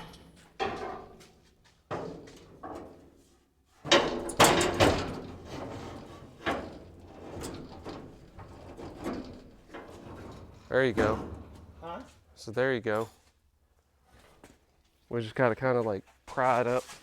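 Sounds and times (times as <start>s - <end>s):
sheet metal clunking and scraping: 0.0s - 12.4s.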